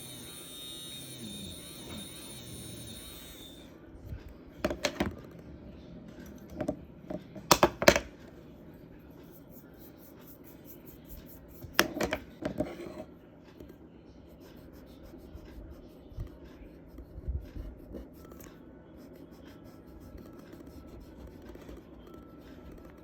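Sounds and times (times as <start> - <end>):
charcoal rubbing on paper: 0.0 - 3.6, 9.2 - 11.8, 14.2 - 18.4, 19.0 - 23.0.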